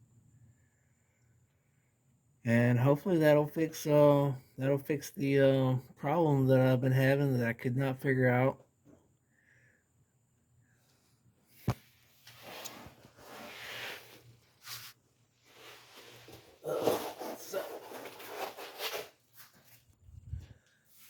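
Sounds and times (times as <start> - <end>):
rubbing and scraping handling noise: 11.5 - 21.0.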